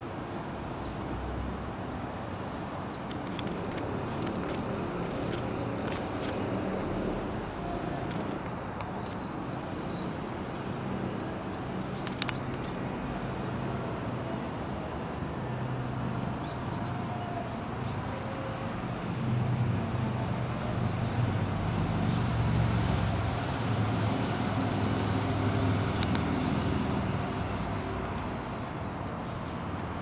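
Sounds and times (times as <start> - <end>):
traffic rumble: 2.7 - 30.0
sharp click: 3.0 - 6.9, 8.1 - 9.3, 12.0 - 12.8, 25.8 - 29.2.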